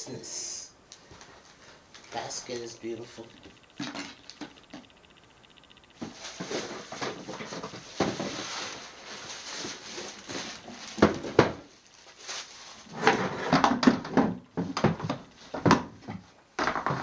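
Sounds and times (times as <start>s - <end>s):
paper bag rustling: 6.0s - 13.2s
cardboard boxes knocking on table: 10.9s - 11.6s.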